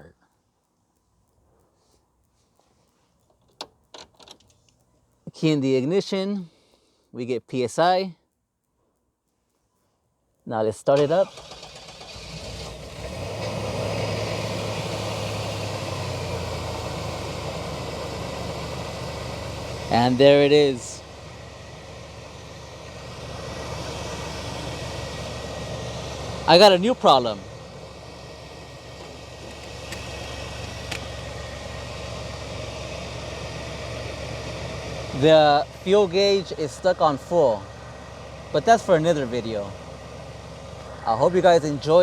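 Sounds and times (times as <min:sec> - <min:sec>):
faint clicks: 0:00.1 - 0:05.3, 0:08.2 - 0:11.5
engine starting and idling: 0:10.9 - 0:42.0.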